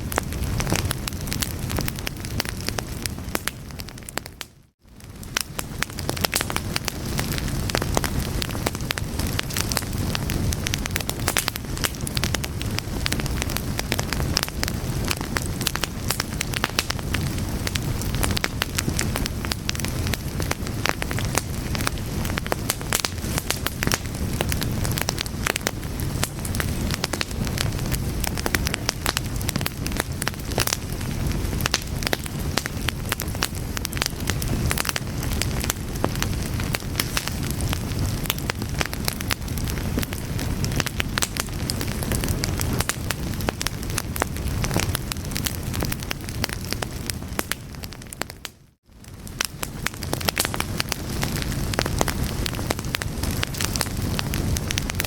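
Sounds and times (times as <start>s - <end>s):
low rumble of flames: 0.0s - 55.0s
wood fire crackling and popping: 0.0s - 55.0s.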